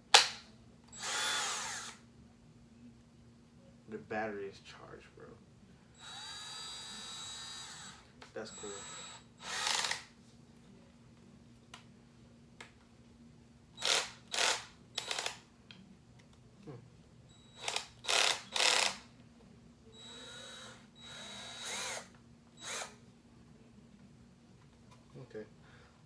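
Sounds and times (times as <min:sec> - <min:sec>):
cordless drill whirring: 0:00.9 - 0:02.0, 0:06.0 - 0:10.1, 0:13.8 - 0:15.4, 0:17.5 - 0:19.1, 0:20.0 - 0:23.0.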